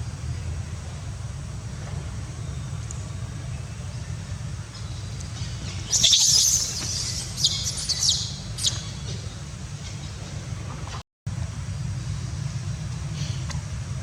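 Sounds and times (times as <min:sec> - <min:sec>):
steady low rumble: 0:00.0 - 0:14.0
baby monkey squealing: 0:05.8 - 0:09.1.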